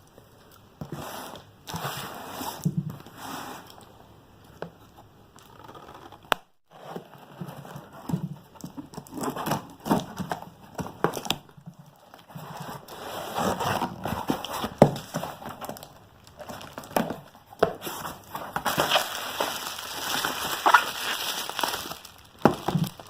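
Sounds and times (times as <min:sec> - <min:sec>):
packaging rustling and crinkling: 0:06.8 - 0:23.0.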